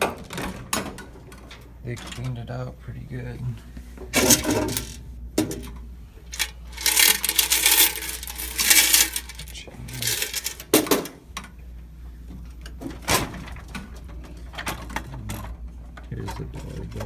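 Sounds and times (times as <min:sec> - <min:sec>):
coins rattling and jingling: 0:04.2 - 0:05.7, 0:06.4 - 0:11.1.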